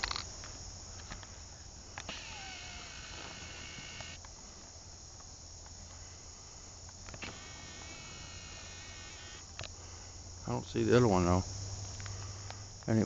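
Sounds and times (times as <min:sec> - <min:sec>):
insects chirring: 0:00.0 - 0:13.0
short clicks: 0:02.0 - 0:04.3.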